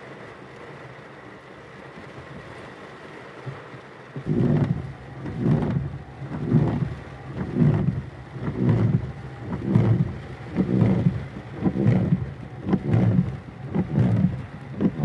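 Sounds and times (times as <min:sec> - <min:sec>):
rain hissing: 0:00.0 - 0:15.0
low rumbling thumps: 0:04.2 - 0:15.0.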